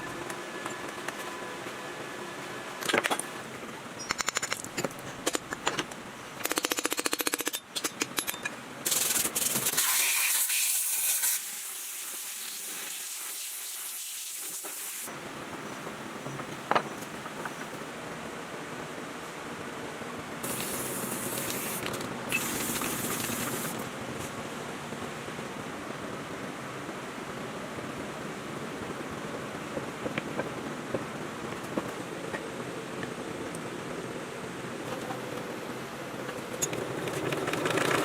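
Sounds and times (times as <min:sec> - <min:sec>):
spray hissing: 0:20.4 - 0:23.8.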